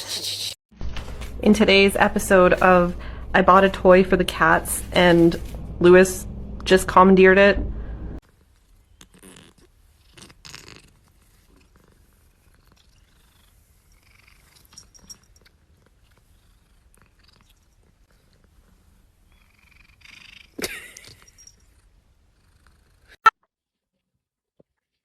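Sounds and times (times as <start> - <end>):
cat purring: 8.2 - 20.6, 21.2 - 23.2.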